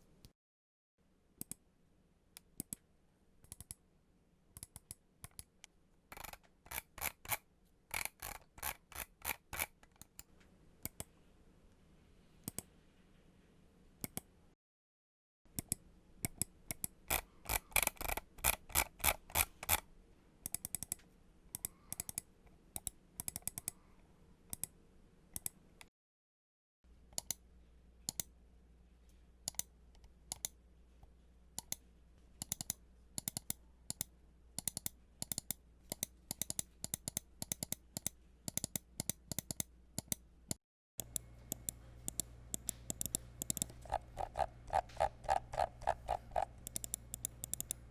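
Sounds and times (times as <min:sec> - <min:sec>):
keyboard and mouse clicking: 0:03.4 - 0:03.8, 0:04.6 - 0:05.5, 0:06.1 - 0:11.1, 0:14.0 - 0:14.3, 0:15.6 - 0:19.8, 0:20.5 - 0:22.2, 0:22.8 - 0:23.8, 0:24.5 - 0:24.7, 0:28.1 - 0:28.3, 0:29.5 - 0:30.6, 0:31.6 - 0:31.8, 0:32.4 - 0:40.2, 0:41.0 - 0:47.9.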